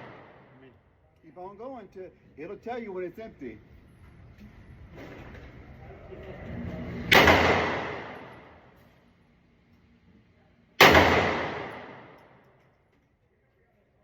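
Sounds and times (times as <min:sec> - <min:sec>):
gunshots with echoing tail: 0:00.0 - 0:00.5, 0:07.0 - 0:08.7, 0:10.8 - 0:12.4.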